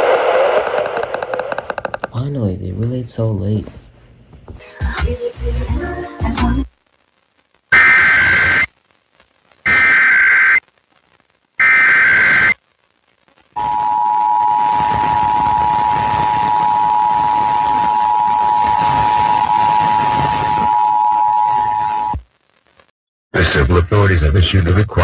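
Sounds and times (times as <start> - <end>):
rapid two-tone data warbling: 0.0 - 2.2
radio hiss: 0.0 - 5.4, 6.4 - 8.8.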